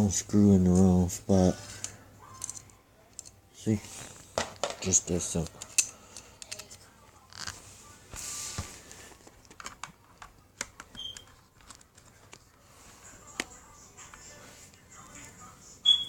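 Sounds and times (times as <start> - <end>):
small parts clicking and tapping: 1.8 - 3.4, 4.4 - 7.5.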